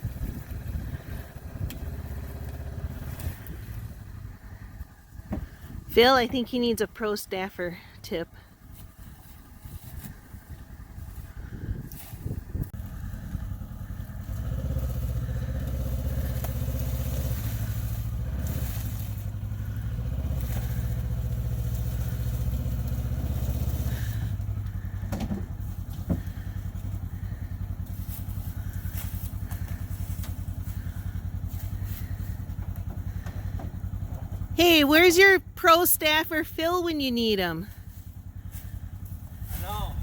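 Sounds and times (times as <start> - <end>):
utv engine running: 0.0 - 40.0.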